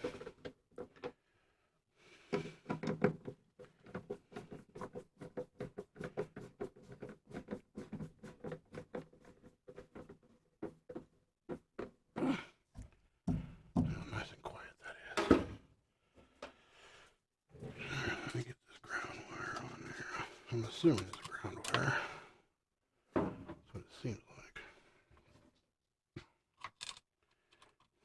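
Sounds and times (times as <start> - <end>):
hands and tools clicking on parts: 2.3 - 12.0, 26.6 - 28.0.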